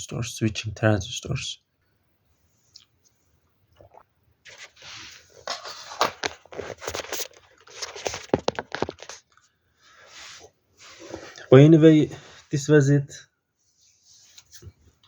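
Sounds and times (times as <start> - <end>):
crunching and scraping: 4.5 - 9.4.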